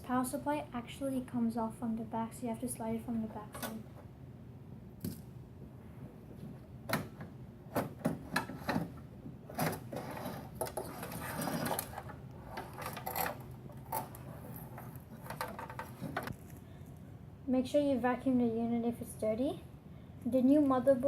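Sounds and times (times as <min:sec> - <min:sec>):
power supply scraping out of case: 0:09.5 - 0:16.3.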